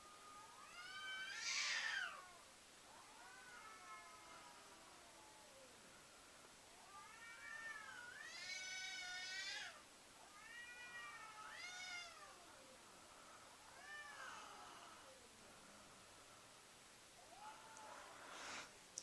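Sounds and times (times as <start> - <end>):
cats caterwauling: 0.0 - 5.8, 6.7 - 12.8, 13.5 - 15.4, 17.2 - 18.4.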